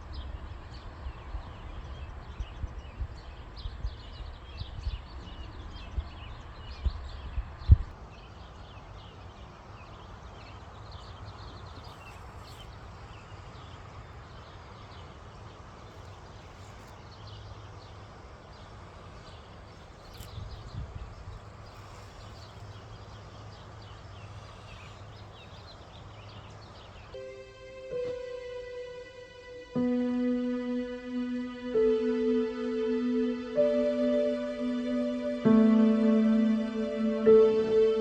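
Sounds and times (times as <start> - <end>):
faint high chirps: 27.2 - 38.0
music with held tones: 27.2 - 38.0.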